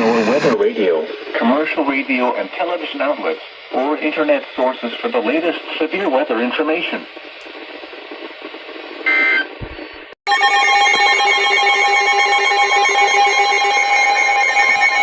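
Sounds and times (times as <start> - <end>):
electronic multi-tone alert: 10.3 - 15.0.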